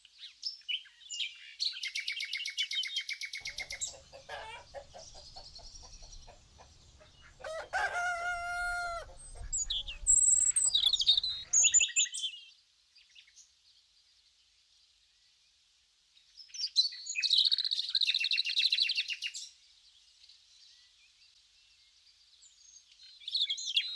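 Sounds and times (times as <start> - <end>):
small birds chirping: 0.0 - 15.4, 16.2 - 23.9
rooster crowing: 3.5 - 5.1, 7.0 - 11.4.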